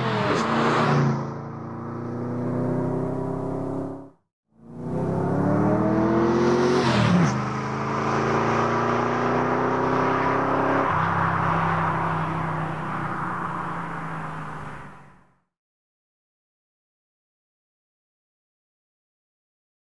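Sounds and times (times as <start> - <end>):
car engine revving: 0.0 - 4.1, 4.7 - 14.8.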